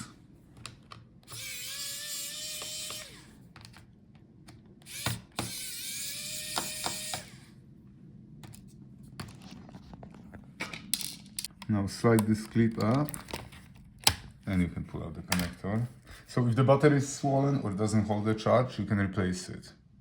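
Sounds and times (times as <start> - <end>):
tool and screws clicking: 0.6 - 3.8, 4.8 - 7.4
electric screwdriver running: 1.2 - 3.4, 4.8 - 7.5.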